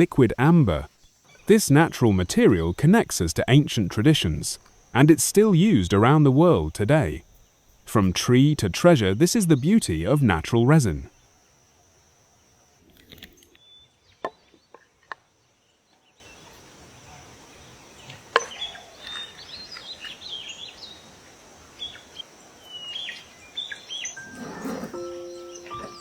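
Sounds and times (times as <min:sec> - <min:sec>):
birds chirping: 0:00.0 - 0:11.3, 0:16.2 - 0:26.0
outdoor background hiss: 0:00.0 - 0:26.0.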